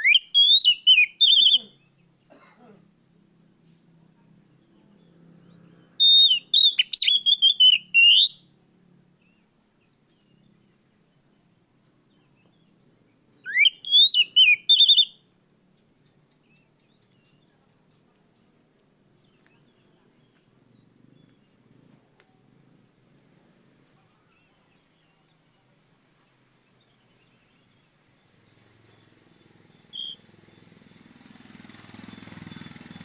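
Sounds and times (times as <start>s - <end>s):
bird singing whistled notes: 0.0s - 2.0s, 5.4s - 8.6s, 13.4s - 15.2s, 28.8s - 31.1s, 32.1s - 33.0s
cricket chirps: 5.2s - 31.8s.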